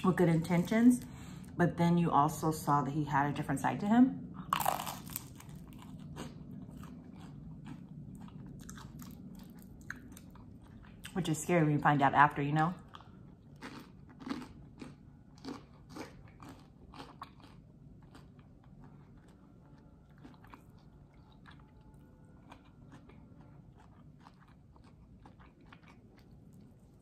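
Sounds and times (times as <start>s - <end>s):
chewing crunchy food: 4.4s - 11.4s, 12.7s - 27.0s.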